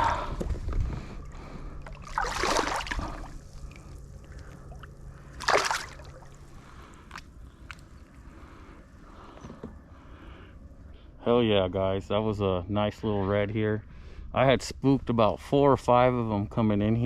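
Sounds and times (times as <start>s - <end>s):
water sloshing and splashing: 0.0s - 8.3s.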